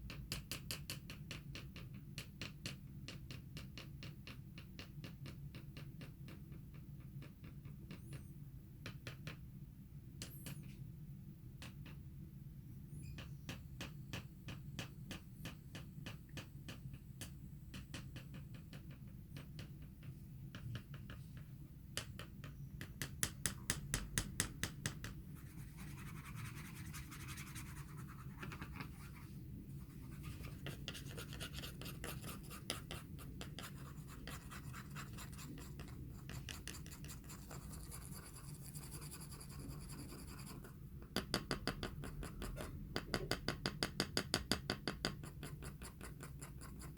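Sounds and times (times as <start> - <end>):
fingers tapping on a floor: 13.2 - 25.2, 41.0 - 46.6.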